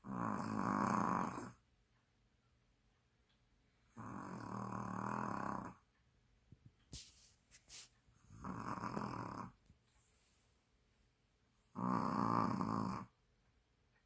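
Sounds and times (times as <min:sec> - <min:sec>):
dog snoring: 0:00.0 - 0:01.6, 0:03.9 - 0:05.9, 0:08.2 - 0:09.6, 0:11.7 - 0:13.2
faint clicks and snuffles: 0:00.0 - 0:01.7, 0:03.3 - 0:10.4.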